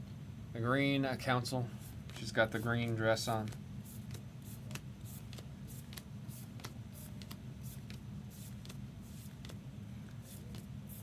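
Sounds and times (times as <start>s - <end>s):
steady low hum: 0.0s - 11.0s
trading cards sliding together: 3.4s - 9.6s, 10.2s - 11.0s.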